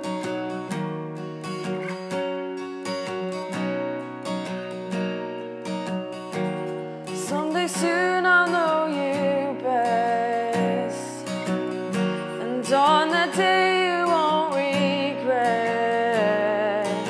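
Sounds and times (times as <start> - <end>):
acoustic guitar: 0.0 - 17.0
woman singing: 7.1 - 17.0.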